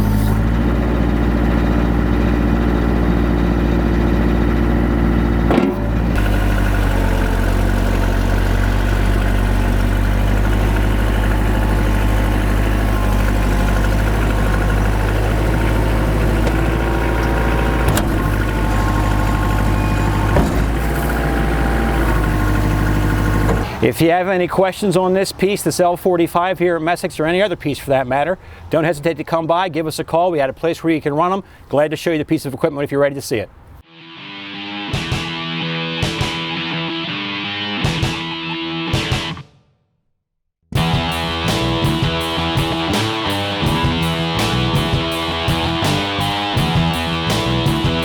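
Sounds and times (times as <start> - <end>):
tractor diesel engine running: 0.0 - 24.6, 40.8 - 48.0
short knocks: 5.5 - 6.0, 20.2 - 21.0.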